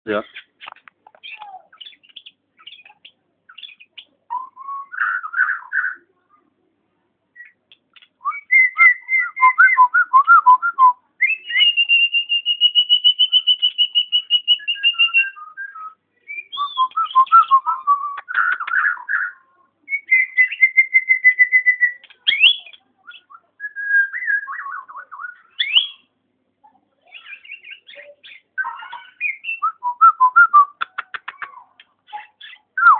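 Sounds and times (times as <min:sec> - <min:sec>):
myna whistling: 0:08.2 - 0:19.3, 0:19.9 - 0:26.1.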